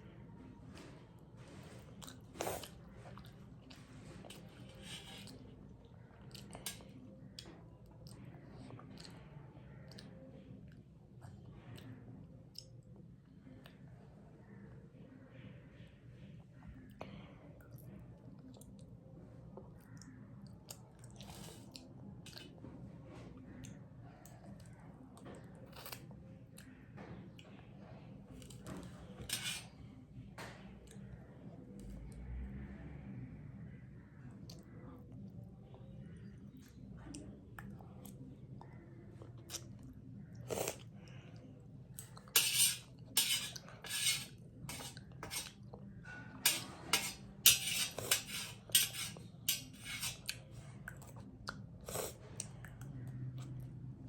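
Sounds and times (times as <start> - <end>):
chewing noodles: 1.6 - 11.9
utensil clinking against bowl: 42.3 - 45.5, 46.4 - 50.4.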